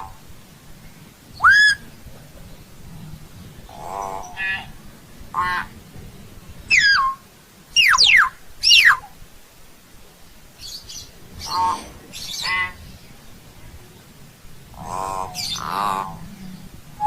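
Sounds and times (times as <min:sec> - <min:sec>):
bird harsh calls: 0:01.4 - 0:01.9, 0:03.6 - 0:05.8, 0:06.7 - 0:07.2, 0:07.8 - 0:09.1, 0:10.6 - 0:13.0, 0:14.7 - 0:16.3.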